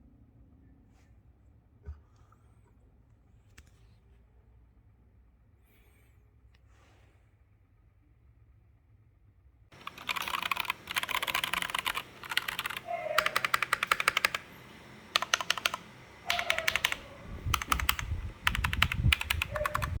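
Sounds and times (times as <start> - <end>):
mechanical keyboard typing: 9.7 - 20.0.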